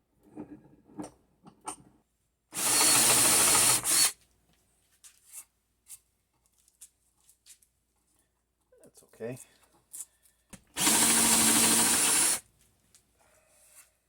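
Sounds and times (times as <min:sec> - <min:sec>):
power drill boring into wood: 0:02.6 - 0:04.1, 0:10.8 - 0:12.4.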